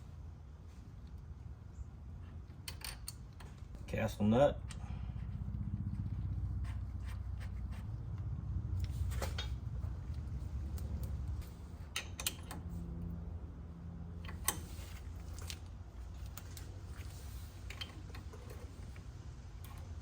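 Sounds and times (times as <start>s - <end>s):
low hum: 3.3s - 17.1s
metal parts and tools clicking: 11.9s - 12.6s.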